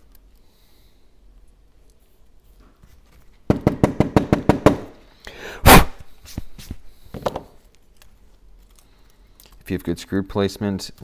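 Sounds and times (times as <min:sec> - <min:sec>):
sharp knocks: 0:03.5 - 0:04.9.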